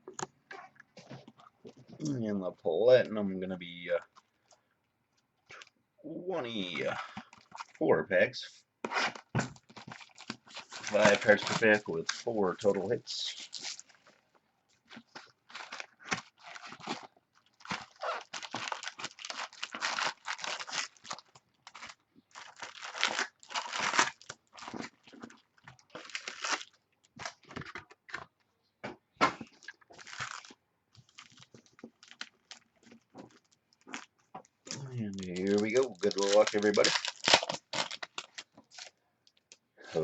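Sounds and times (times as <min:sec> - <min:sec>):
packaging tearing and crinkling: 0:08.9 - 0:12.3, 0:13.3 - 0:14.0, 0:14.9 - 0:27.7, 0:29.6 - 0:39.4.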